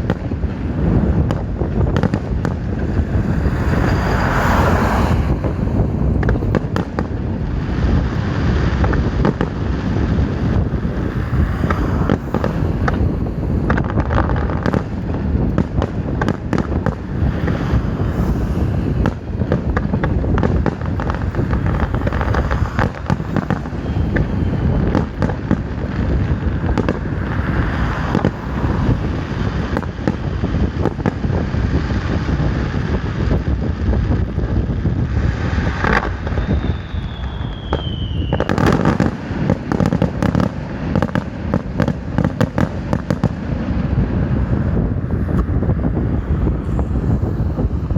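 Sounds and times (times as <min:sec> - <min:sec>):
fireworks booms: 0:00.0 - 0:47.9
fireworks crackling and popping: 0:00.0 - 0:47.9
falling whistle: 0:36.3 - 0:38.6.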